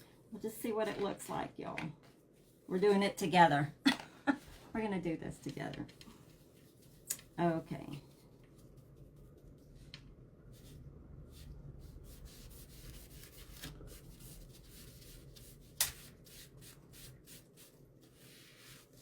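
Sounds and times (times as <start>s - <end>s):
sponge brush rubbing on wood: 16.3s - 19.0s.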